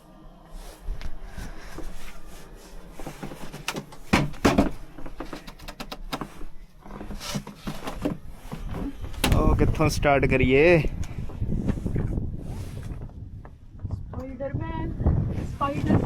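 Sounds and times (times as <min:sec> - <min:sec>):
objects being handled: 0:00.8 - 0:09.4.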